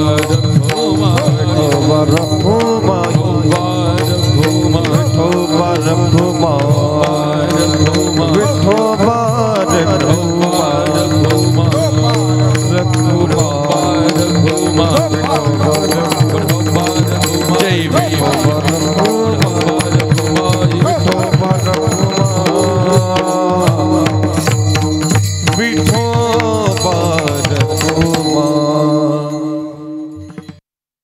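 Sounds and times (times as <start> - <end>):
hand drum: 0.0 - 28.6
devotional chanting: 0.0 - 30.6
small jingling cymbals: 0.0 - 30.6.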